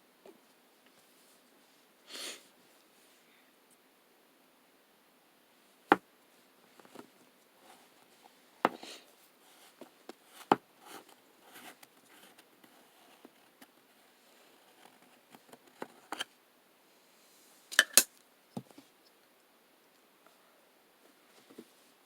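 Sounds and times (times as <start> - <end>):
soft handling noises: 0.2 - 1.9, 6.2 - 16.4, 17.1 - 20.4, 21.0 - 22.0.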